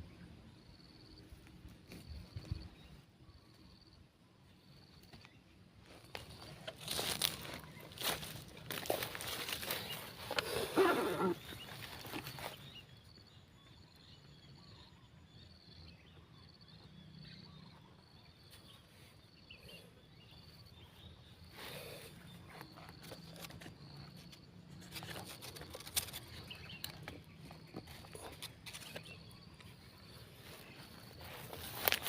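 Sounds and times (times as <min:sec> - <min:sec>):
rustles and clicks: 0:22.6 - 0:32.0.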